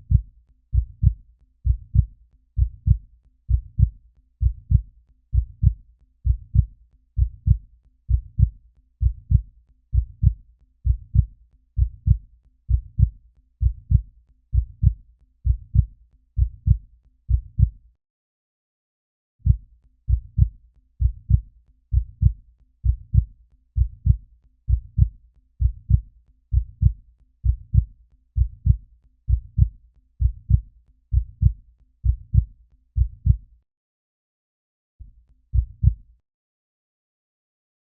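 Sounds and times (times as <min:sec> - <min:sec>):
heartbeat thumps: 0:00.0 - 0:04.8, 0:05.4 - 0:09.4, 0:10.0 - 0:14.0, 0:14.6 - 0:17.7, 0:19.4 - 0:33.4, 0:35.6 - 0:36.0.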